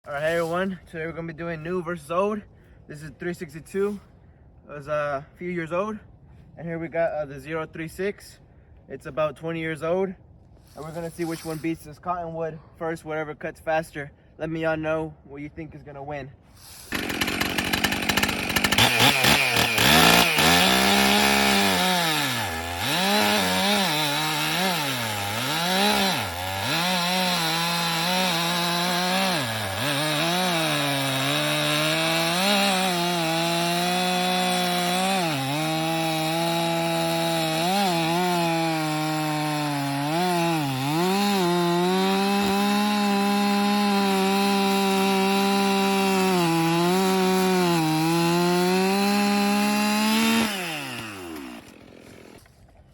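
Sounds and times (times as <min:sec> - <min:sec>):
chainsaw cutting log: 0:16.6 - 0:52.9.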